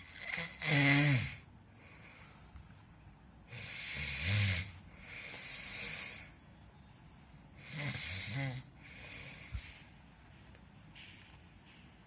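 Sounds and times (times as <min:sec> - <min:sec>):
person snoring: 0:00.1 - 0:01.5, 0:03.5 - 0:06.3, 0:07.6 - 0:09.5.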